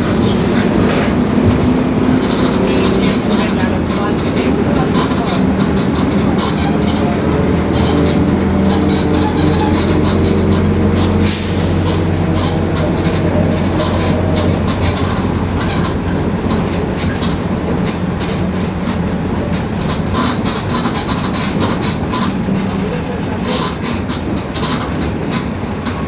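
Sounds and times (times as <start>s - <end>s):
differential growling: 0.0s - 15.9s
bus body rattling and knocking: 0.0s - 26.0s
bus diesel engine drone: 0.0s - 26.0s.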